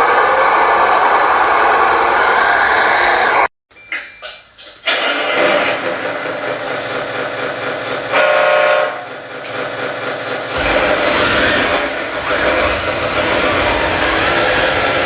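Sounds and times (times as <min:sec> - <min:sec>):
toy truck engine rumble: 0:04.8 - 0:15.0
toy truck motor noise: 0:06.9 - 0:15.0
toy truck horn: 0:08.1 - 0:15.0.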